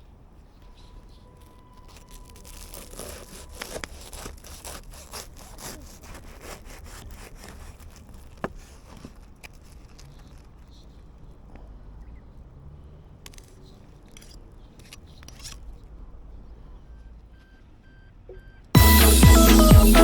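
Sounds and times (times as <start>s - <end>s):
quick rasping strokes: 1.8s - 9.8s.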